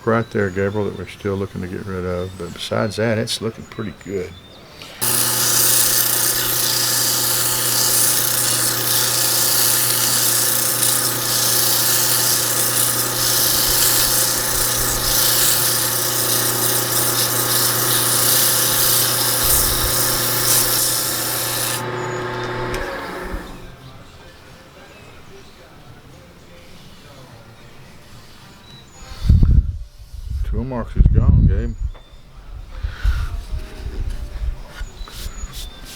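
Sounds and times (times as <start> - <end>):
hiss of wood being cut: 4.9 - 23.7
wood lathe motor hum: 5.0 - 23.8.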